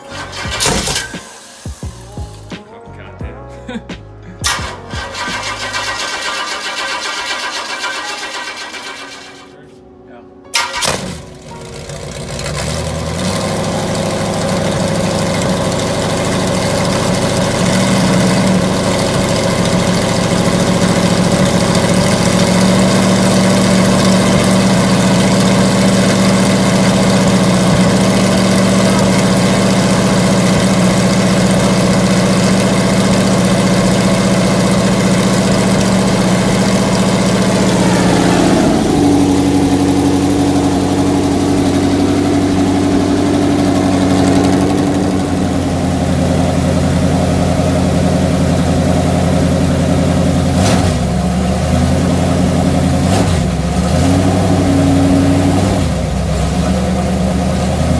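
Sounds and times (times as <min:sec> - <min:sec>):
car engine idling: 0:00.0 - 0:03.3, 0:04.0 - 0:09.6, 0:10.5 - 0:57.9.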